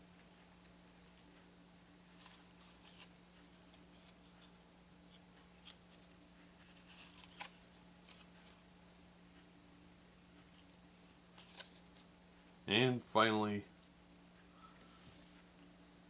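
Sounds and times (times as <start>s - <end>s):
steady low hum: 0.0s - 16.0s
cardboard cards rustling: 2.1s - 4.4s, 5.6s - 8.6s, 11.4s - 12.1s.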